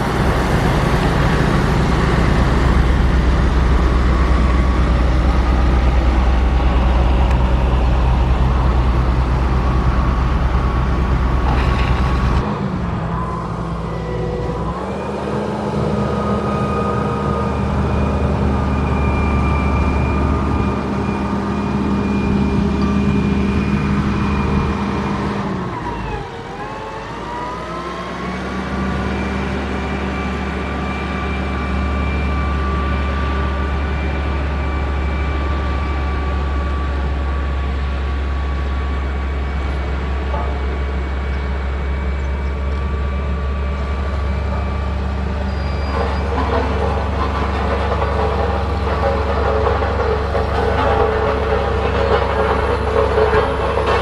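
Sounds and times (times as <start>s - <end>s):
grader diesel engine running: 0.0s - 54.0s.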